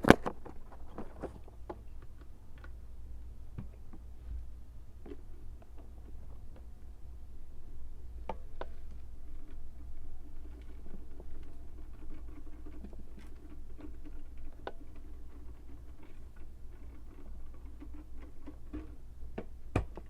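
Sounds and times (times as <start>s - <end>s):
low steady hum: 0.0s - 20.0s
faint clicks and taps: 3.5s - 6.7s, 8.2s - 20.0s.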